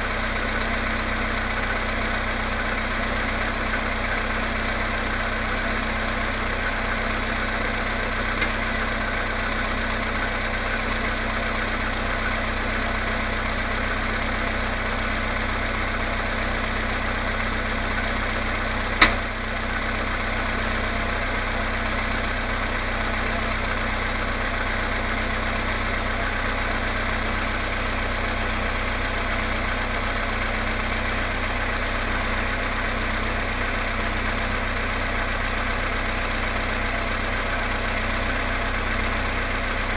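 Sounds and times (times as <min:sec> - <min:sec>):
car engine idling with knock: 0:00.0 - 0:39.9
sharp click: 0:19.0 - 0:19.3.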